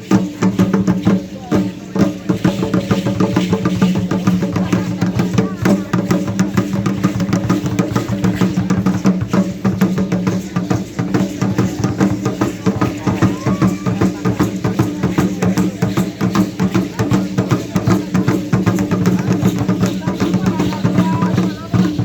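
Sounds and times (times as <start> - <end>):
fast drumbeats: 0.0 - 22.0.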